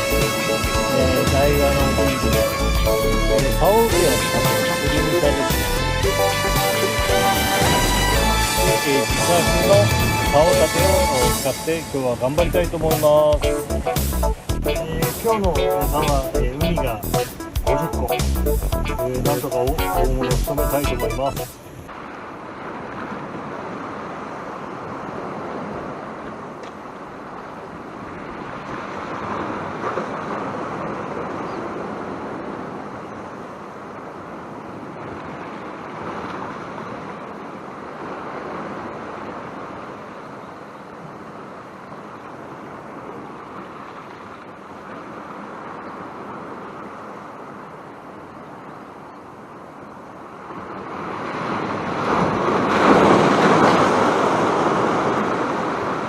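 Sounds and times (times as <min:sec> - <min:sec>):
sea swell against rocks: 0:06.9 - 0:13.3, 0:50.4 - 0:56.0
strong wind on microphone: 0:07.1 - 0:12.0.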